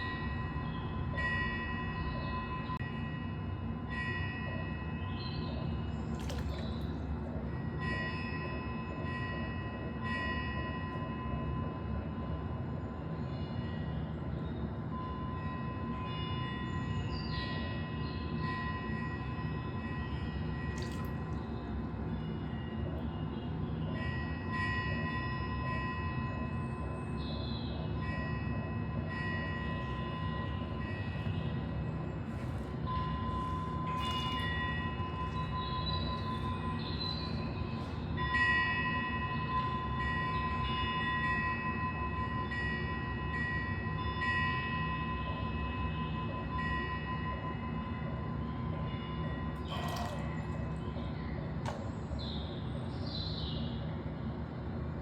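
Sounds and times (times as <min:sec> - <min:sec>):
bell-like ringing tones: 0:28.0 - 0:31.9.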